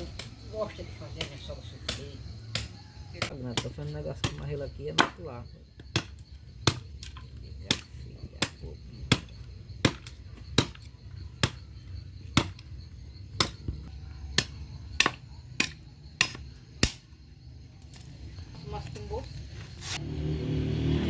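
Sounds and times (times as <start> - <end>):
firewood being chopped: 1.1 - 17.2.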